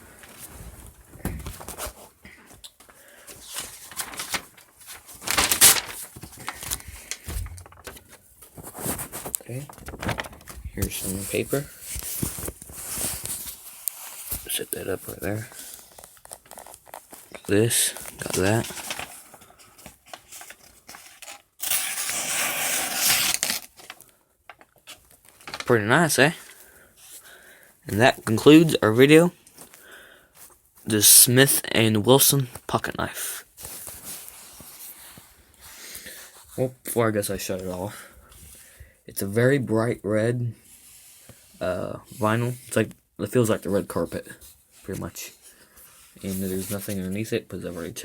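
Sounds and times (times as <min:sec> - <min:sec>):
paper rustling: 0:00.2 - 0:27.2, 0:43.7 - 0:48.0
light handling noises: 0:05.4 - 0:20.8
knife blade slicing paper: 0:21.6 - 0:23.7.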